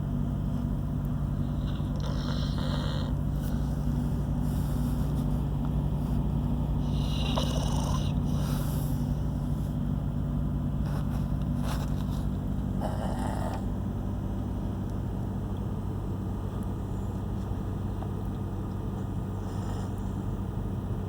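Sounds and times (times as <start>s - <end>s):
steady low hum: 0.0s - 21.0s
short noisy breaths: 1.4s - 9.9s
person snoring: 1.6s - 3.6s, 6.8s - 9.0s.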